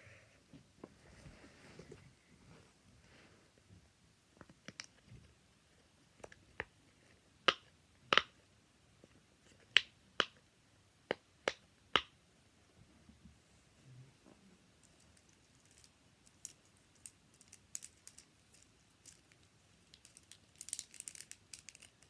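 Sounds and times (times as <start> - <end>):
fidget toys popping: 15.6 - 22.0.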